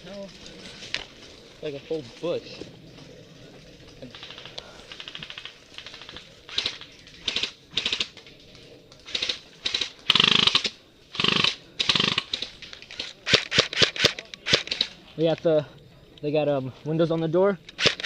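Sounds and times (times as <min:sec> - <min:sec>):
airsoft guns firing: 0:04.2 - 0:08.2, 0:09.1 - 0:14.9, 0:17.7 - 0:18.0.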